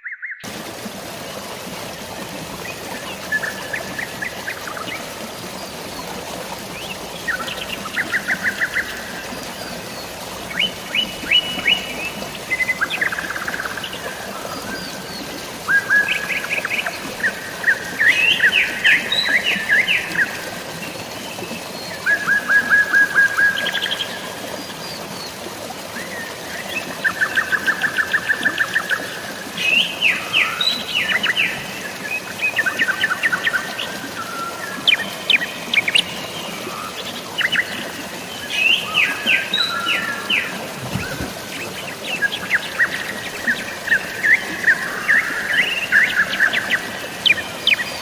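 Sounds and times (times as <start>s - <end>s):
flowing water: 0.4s - 48.0s
songbirds trilling: 29.6s - 48.0s.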